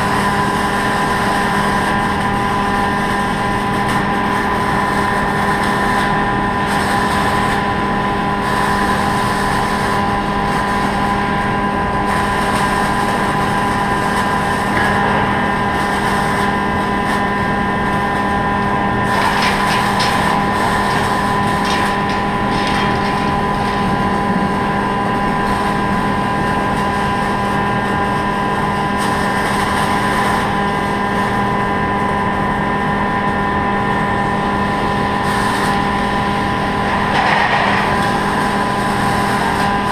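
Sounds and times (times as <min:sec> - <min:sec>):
welding machine hum: 0:00.0 - 0:39.9
welding crackling: 0:12.1 - 0:29.4, 0:35.2 - 0:39.9.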